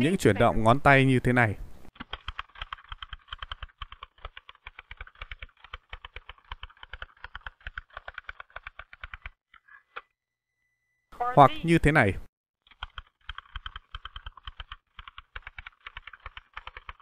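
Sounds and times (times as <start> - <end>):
typewriter keys clacking: 2.0 - 9.3, 12.7 - 17.0.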